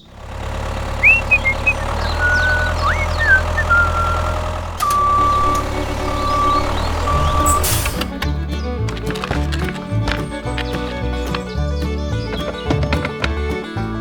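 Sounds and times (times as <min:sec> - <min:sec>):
vehicle engine rumble: 0:00.0 - 0:14.0
chirping whistles: 0:00.9 - 0:07.9
high electronic beeps: 0:01.0 - 0:07.7.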